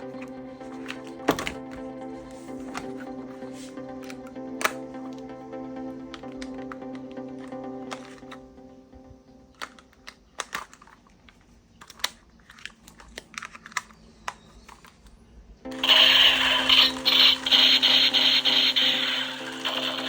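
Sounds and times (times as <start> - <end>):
plastic toy parts clicking: 6.1 - 8.4, 9.6 - 20.0
toy gun motor buzzing: 15.8 - 20.0.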